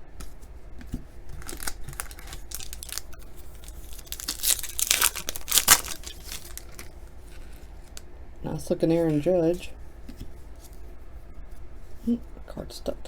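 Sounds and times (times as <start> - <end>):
foil wrapper tearing and crinkling: 1.4 - 8.0.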